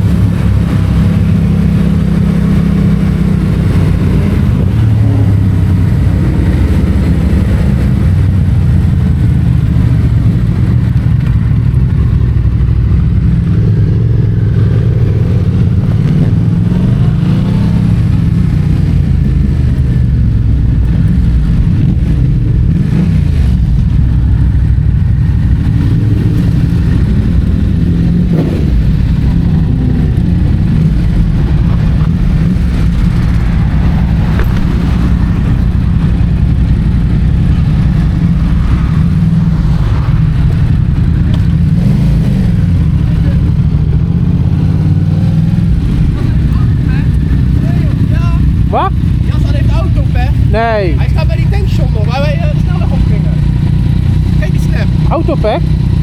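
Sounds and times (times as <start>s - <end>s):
motorcycle engine revving: 0.0s - 56.0s.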